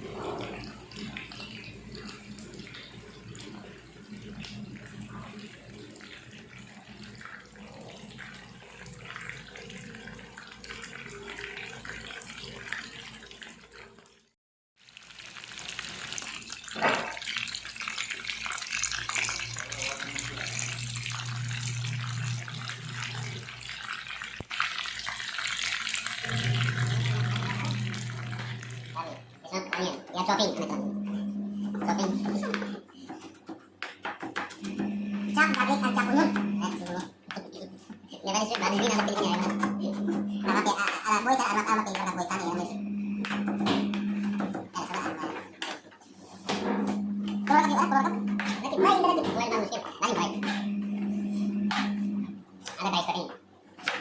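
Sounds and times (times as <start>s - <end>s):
tap water running into a sink: 0.0s - 33.2s, 33.9s - 45.8s, 46.5s - 52.3s
low steady hum: 26.2s - 29.5s, 30.4s - 32.8s.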